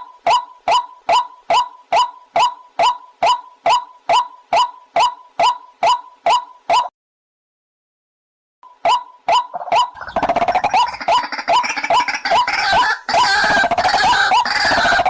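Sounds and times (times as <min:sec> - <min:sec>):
waterhen calling: 0:08.9 - 0:15.0.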